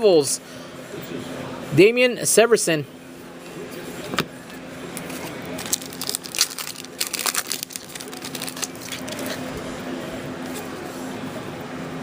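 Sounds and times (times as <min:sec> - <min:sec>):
trading cards clicking and rustling: 0:05.0 - 0:09.4.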